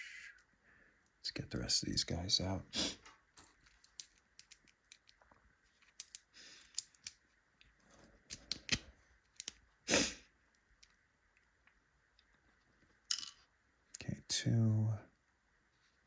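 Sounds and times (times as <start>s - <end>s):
small metal clicks and taps: 3.4s - 5.3s, 9.4s - 9.6s.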